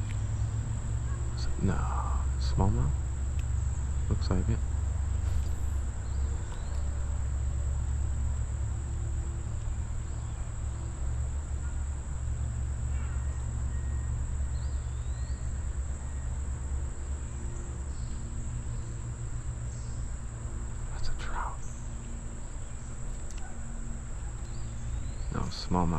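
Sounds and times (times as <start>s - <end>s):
faint chirps: 0.0s - 2.9s, 5.2s - 8.0s, 20.8s - 23.5s
low rumble: 0.0s - 10.6s
high-pitched insect drone: 5.2s - 23.0s.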